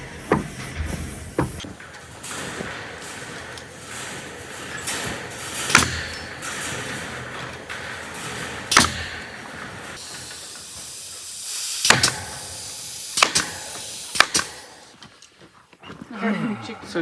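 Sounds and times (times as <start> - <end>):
sharp knocks: 0.0 - 10.0
steady hiss: 0.0 - 15.0.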